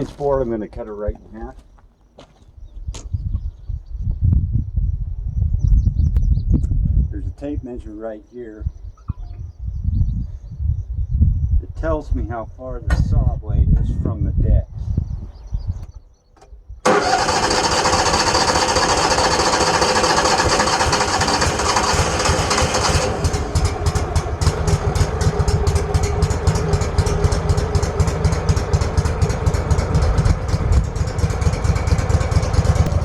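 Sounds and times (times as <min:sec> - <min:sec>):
sawmill engine running and idling: 0:16.8 - 0:33.0.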